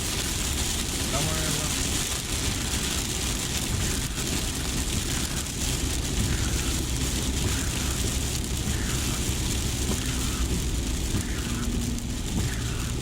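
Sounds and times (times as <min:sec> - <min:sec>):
car driving rumble: 0:00.0 - 0:13.0
rain hiss on wet road: 0:00.0 - 0:13.0.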